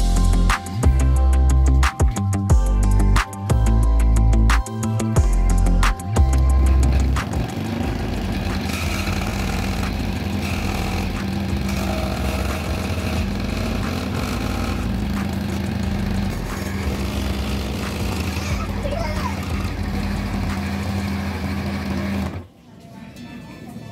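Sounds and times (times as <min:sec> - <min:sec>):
small motor humming: 0:05.3 - 0:22.4.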